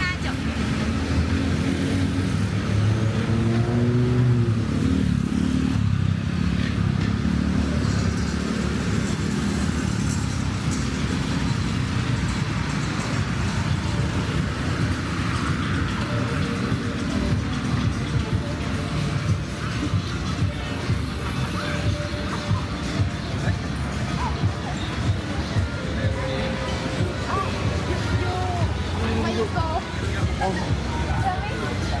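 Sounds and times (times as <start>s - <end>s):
cars and motorbikes passing: 0.0s - 32.0s
engine revving up: 0.5s - 11.8s.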